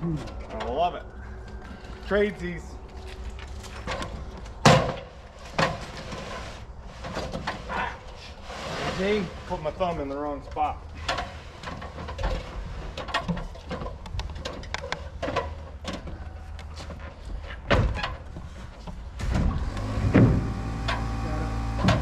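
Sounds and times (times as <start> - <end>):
motor humming: 19.2 - 22.0.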